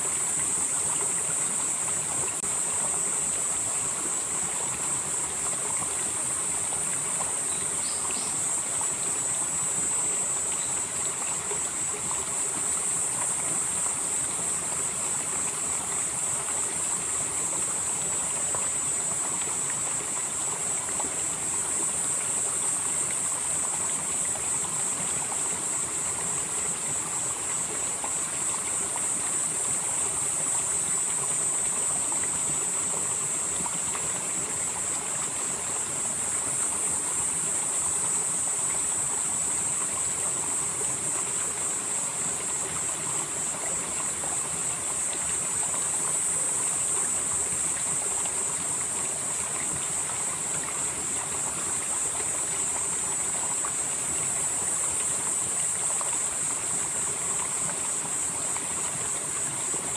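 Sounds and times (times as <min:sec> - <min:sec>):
stream flowing: 0:00.0 - 0:59.9
high-pitched insect drone: 0:05.0 - 0:11.8.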